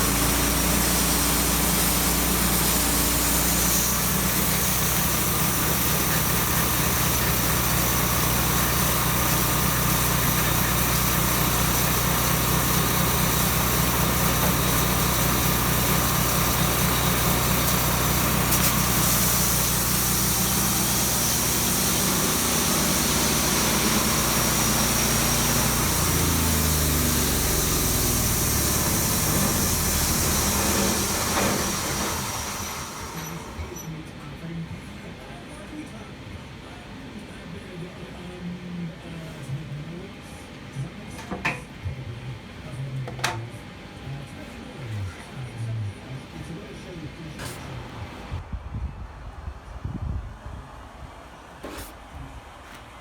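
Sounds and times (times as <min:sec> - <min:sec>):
petrol engine running: 0:00.0 - 0:34.0, 0:46.0 - 0:48.4.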